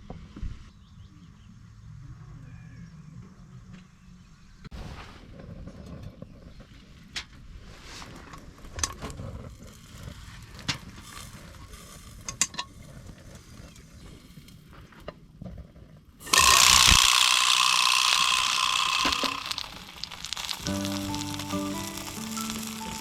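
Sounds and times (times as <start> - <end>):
loud sizzling hiss: 16.2 - 23.0.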